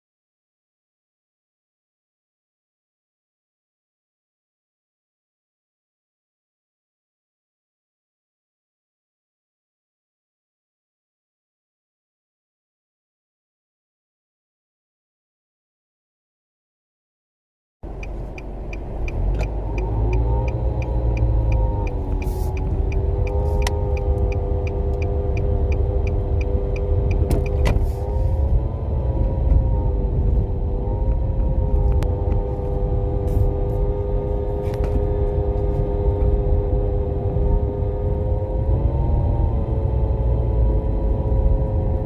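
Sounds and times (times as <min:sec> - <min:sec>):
regular ticking: 0:17.8 - 0:27.6
car engine low rumble: 0:17.8 - 0:42.0.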